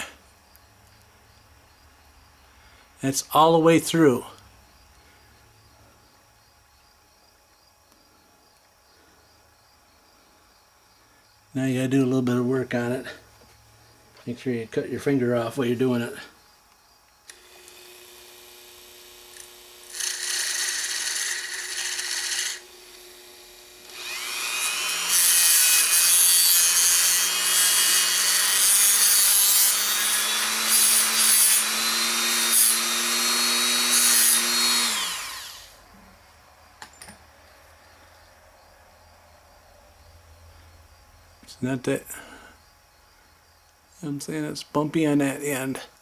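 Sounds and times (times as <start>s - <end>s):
power tool grinding metal: 17.3s - 35.8s.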